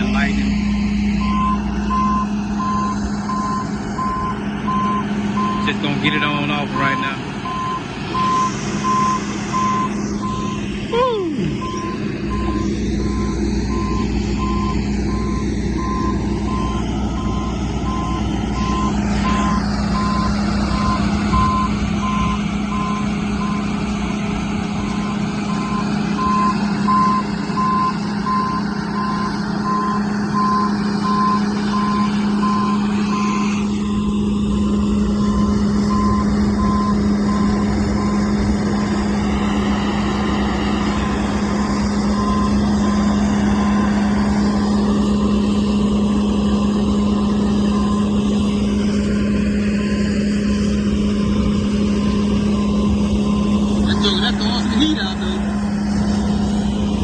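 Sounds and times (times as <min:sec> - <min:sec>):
farm machine engine running: 0:00.0 - 0:57.0
back-up beeper: 0:01.2 - 0:05.8, 0:06.6 - 0:23.6, 0:52.0 - 0:55.4.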